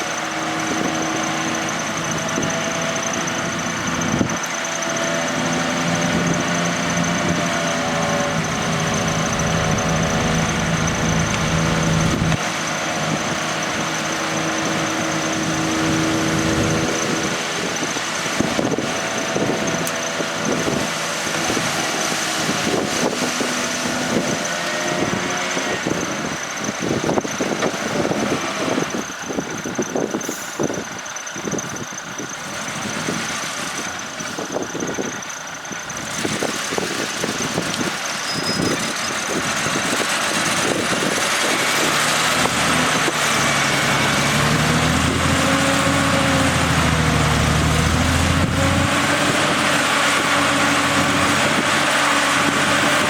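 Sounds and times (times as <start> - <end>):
diesel machinery engine: 0.0 - 53.0
clanking and rattling: 5.8 - 12.4.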